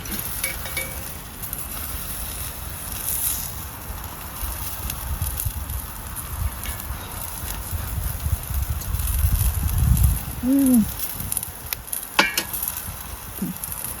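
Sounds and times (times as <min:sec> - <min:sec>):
wind gusting over microphone: 0:00.0 - 0:14.0
wood fire crackling: 0:00.0 - 0:14.0.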